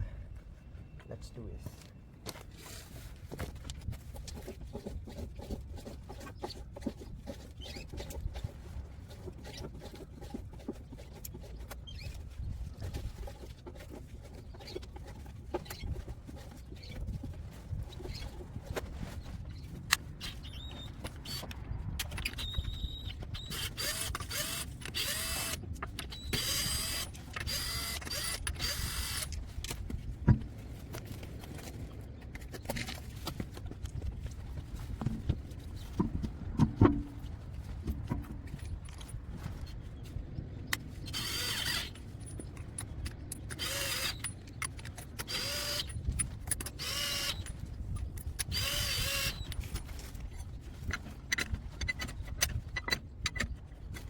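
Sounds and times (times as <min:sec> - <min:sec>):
power tool whirring: 0:22.3 - 0:29.4, 0:41.1 - 0:42.0, 0:43.5 - 0:44.3, 0:45.2 - 0:45.9, 0:46.8 - 0:47.5, 0:48.4 - 0:49.6
sharp thumps: 0:35.0 - 0:38.6.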